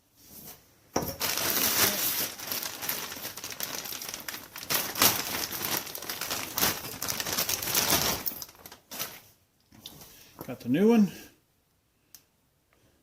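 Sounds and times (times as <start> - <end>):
packaging crinkling: 1.2 - 9.3.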